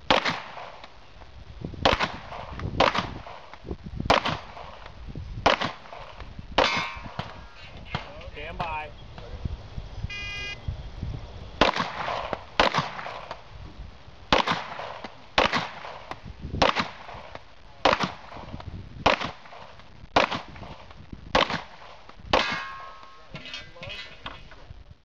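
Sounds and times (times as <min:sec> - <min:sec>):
pistol shots: 0:00.1 - 0:00.9, 0:01.8 - 0:08.1, 0:11.6 - 0:13.4, 0:14.3 - 0:23.2
shot timer beep: 0:10.1 - 0:10.6.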